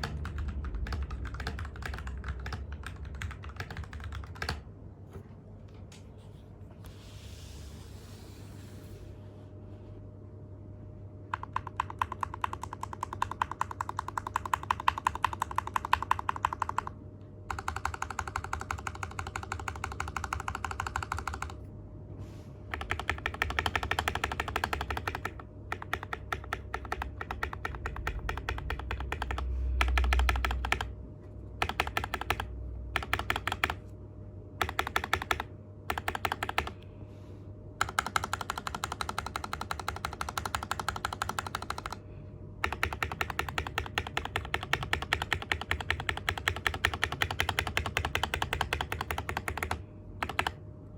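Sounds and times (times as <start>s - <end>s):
fast typing on mechanical keyboard: 0.0s - 4.7s, 11.3s - 21.7s, 22.7s - 31.0s, 31.6s - 33.8s, 34.6s - 36.8s, 37.8s - 42.0s, 42.6s - 50.6s.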